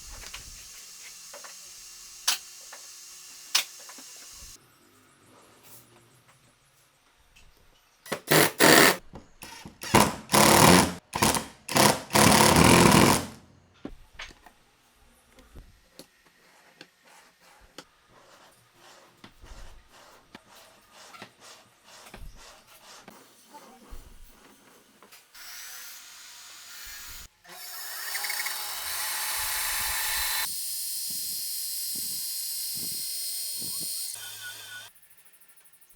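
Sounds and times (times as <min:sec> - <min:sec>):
handheld power tool bursts: 0:00.2 - 0:04.6, 0:08.1 - 0:13.4, 0:26.8 - 0:34.9.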